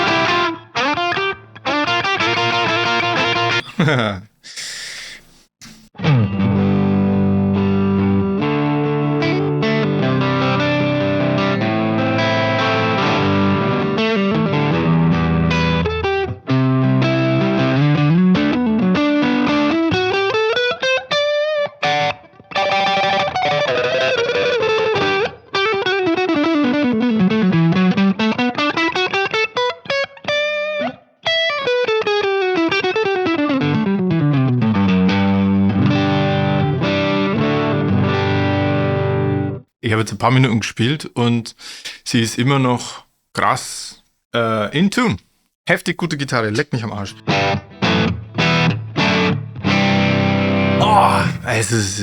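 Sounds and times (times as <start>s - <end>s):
overdriven electric guitar: 0.0s - 3.6s, 6.0s - 39.6s, 47.2s - 50.8s.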